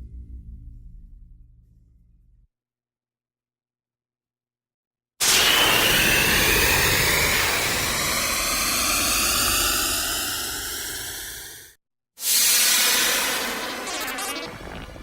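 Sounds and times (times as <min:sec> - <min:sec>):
rising sci-fi laser hiss: 0:05.2 - 0:15.0.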